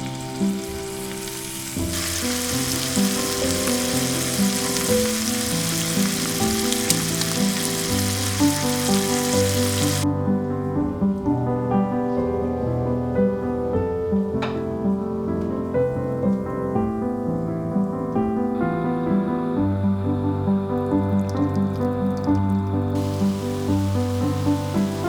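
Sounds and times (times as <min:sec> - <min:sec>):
chicken sizzling in a skillet: 0:00.0 - 0:10.0, 0:23.0 - 0:25.0
background piano music: 0:00.0 - 0:25.0.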